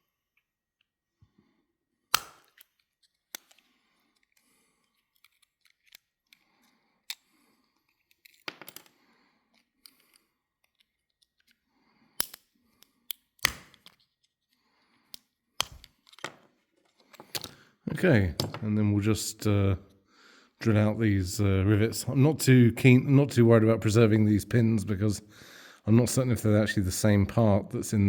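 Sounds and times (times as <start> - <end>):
knife clicks and snaps: 2.1 - 2.7, 12.2 - 14.0, 15.6 - 15.9.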